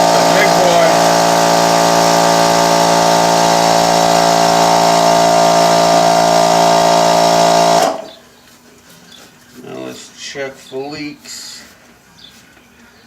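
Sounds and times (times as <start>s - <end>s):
air compressor humming: 0.0s - 8.2s.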